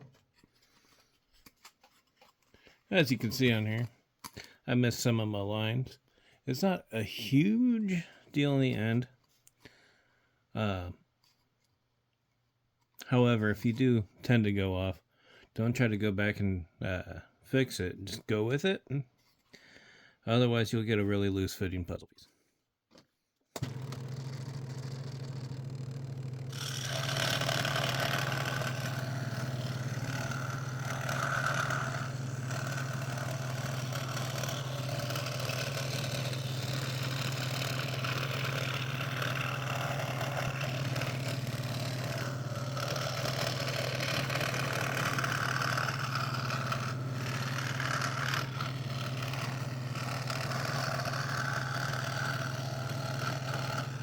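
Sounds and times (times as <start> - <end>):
saw blade rasping through plywood: 23.6 - 54.0
scroll saw motor hum: 23.6 - 54.0.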